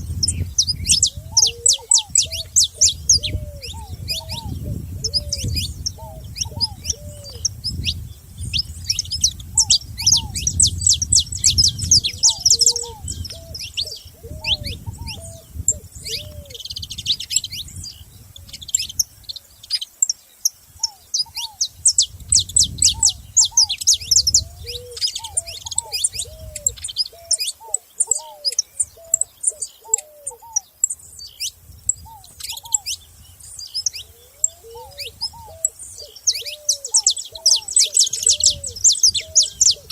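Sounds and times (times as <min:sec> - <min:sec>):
lower bird notes: 0:00.0 - 0:19.8
finches chirping: 0:00.0 - 0:39.9.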